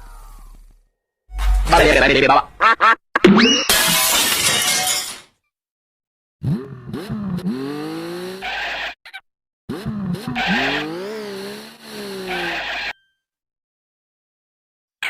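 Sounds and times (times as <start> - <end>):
cartoon tire screech skid: 7.3 - 13.0.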